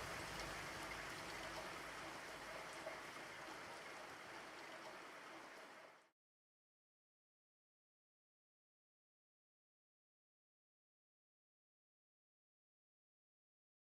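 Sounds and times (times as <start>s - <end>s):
steady rain: 0.0s - 6.1s.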